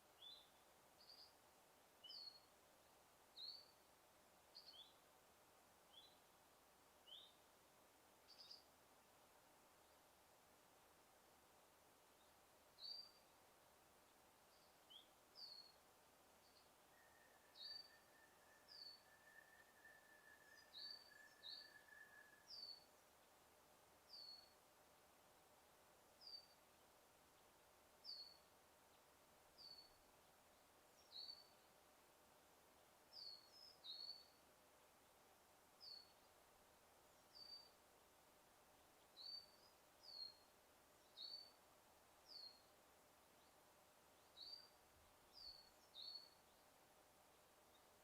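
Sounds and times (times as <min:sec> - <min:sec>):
faint steady hiss: 0:00.0 - 0:48.0
small bird chirping: 0:00.2 - 0:01.4, 0:02.0 - 0:02.5, 0:03.4 - 0:03.8, 0:04.5 - 0:05.0, 0:12.2 - 0:13.3, 0:14.5 - 0:15.8, 0:16.4 - 0:23.0, 0:24.1 - 0:24.6, 0:26.2 - 0:26.6, 0:28.0 - 0:28.5, 0:29.6 - 0:31.7, 0:33.1 - 0:34.4, 0:35.8 - 0:36.3, 0:37.2 - 0:37.8, 0:39.0 - 0:41.6, 0:42.2 - 0:42.7, 0:44.2 - 0:46.6.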